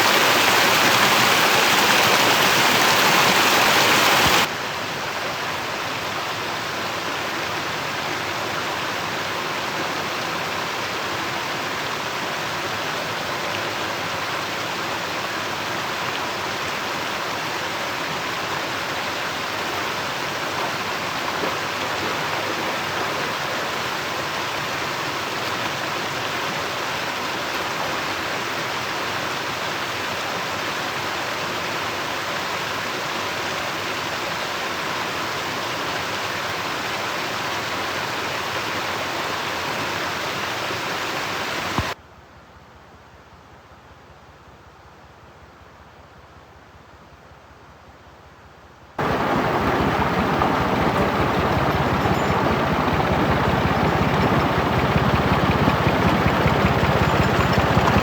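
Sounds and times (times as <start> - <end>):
steady rushing noise: 49.0 - 58.0.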